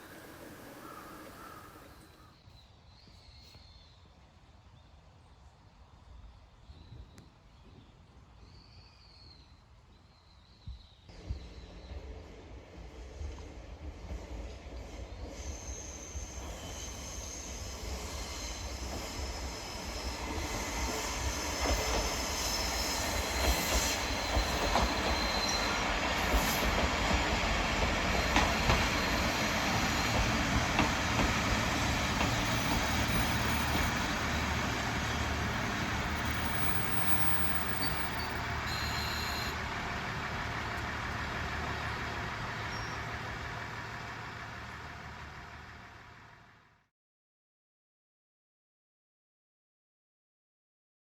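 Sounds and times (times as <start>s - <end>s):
diesel railcar rumbling past: 0.0s - 2.4s, 11.1s - 46.9s
high wheel squeal: 14.9s - 44.4s.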